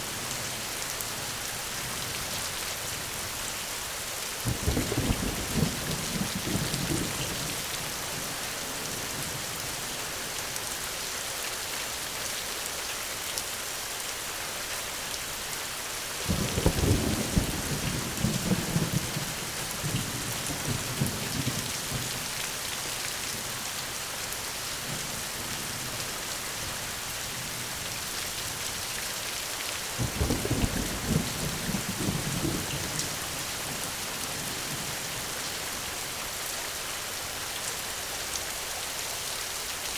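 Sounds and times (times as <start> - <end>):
heavy rain: 0.0 - 39.9
thunder rumbling: 16.3 - 22.1, 30.0 - 35.0.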